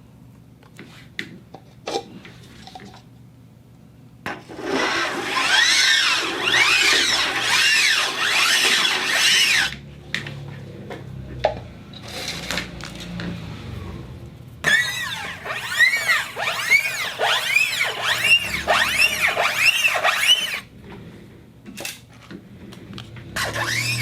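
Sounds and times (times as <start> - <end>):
turntable pitched sweeps: 14.7 - 20.7, 23.4 - 24.0.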